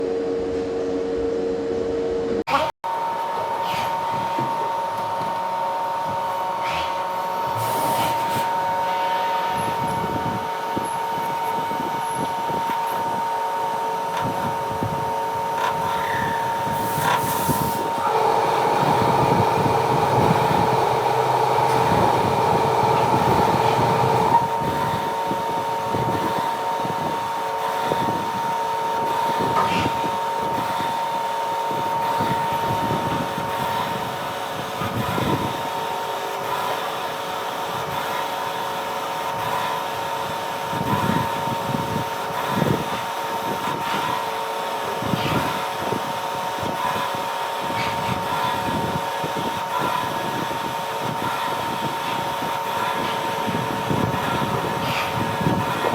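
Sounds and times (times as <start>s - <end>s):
lathe running with high whine: 2.9s - 55.9s
metal cutting noise: 5.4s - 31.0s.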